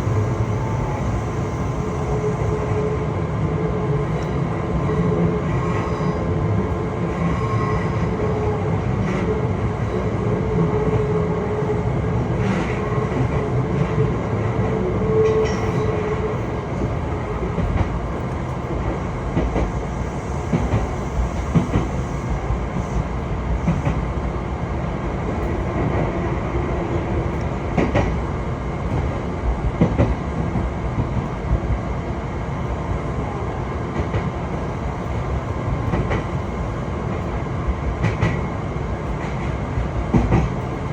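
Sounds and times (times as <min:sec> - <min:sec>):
electric train rumbling: 0:00.0 - 0:40.9.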